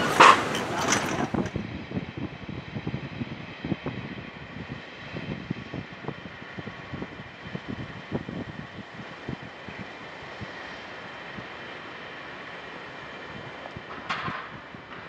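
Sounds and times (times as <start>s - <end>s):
vehicle rumble: 0.0s - 1.9s.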